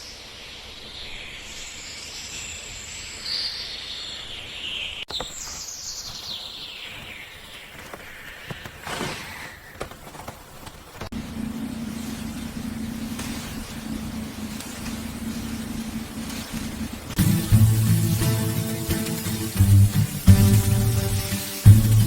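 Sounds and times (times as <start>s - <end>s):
steady hiss: 5.2s - 22.0s
steady low hum: 10.0s - 22.0s.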